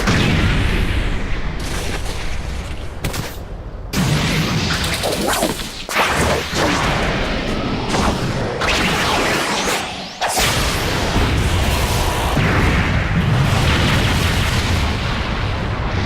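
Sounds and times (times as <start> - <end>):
fast whooshes: 4.8 - 8.4.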